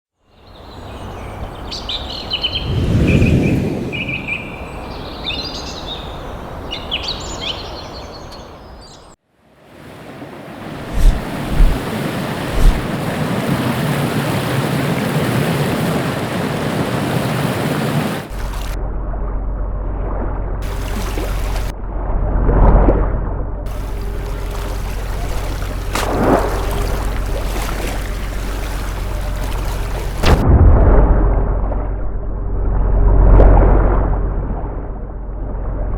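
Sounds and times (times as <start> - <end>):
low whooshing swell: 2.5 - 4.3, 10.8 - 12.9
sharp thuds: 10.8 - 12.9, 23.7 - 30.5
dense rushing noise: 10.8 - 13.2
low rumbling drone: 18.3 - 35.9.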